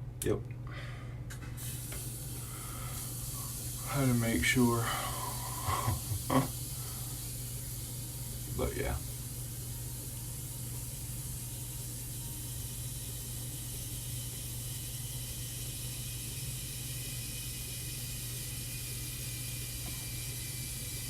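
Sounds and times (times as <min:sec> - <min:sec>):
tap running water: 0:01.6 - 0:09.6, 0:19.2 - 0:21.0.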